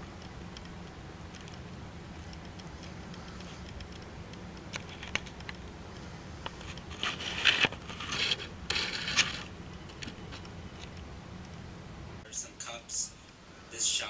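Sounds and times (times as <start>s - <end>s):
scraping rustles: 2.2s - 11.0s.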